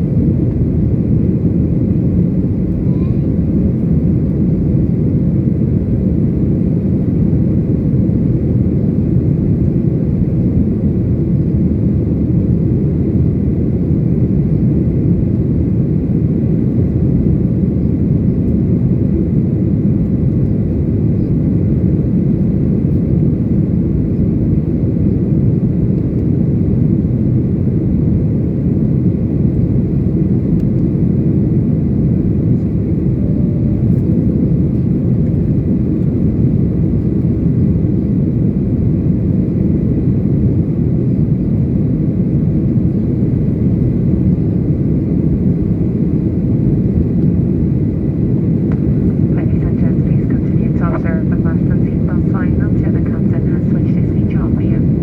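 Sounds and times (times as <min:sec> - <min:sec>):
jet engine and airflow rumble: 0:00.0 - 0:55.0.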